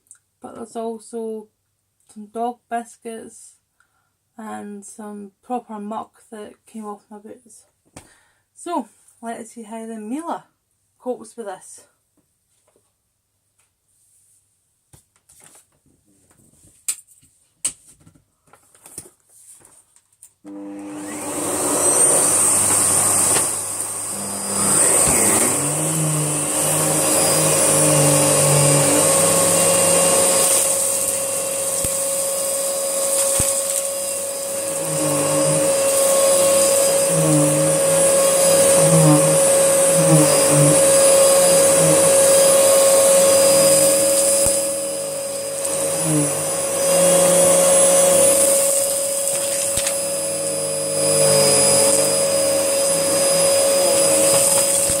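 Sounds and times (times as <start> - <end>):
vacuum cleaner motor whine: 20.4 - 55.0.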